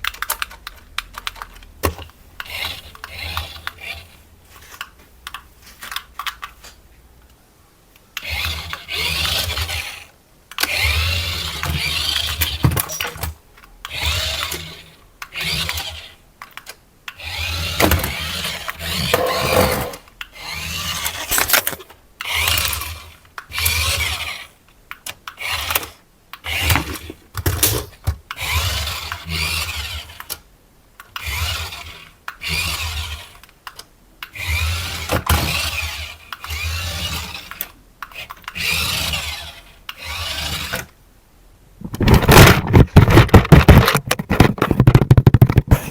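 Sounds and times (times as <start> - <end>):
toy electric motor running: 2.4 - 4.2, 8.2 - 13.1, 13.9 - 16.2, 17.2 - 21.6, 22.2 - 24.6, 25.4 - 27.1, 28.3 - 30.3, 31.2 - 33.5, 34.3 - 40.9.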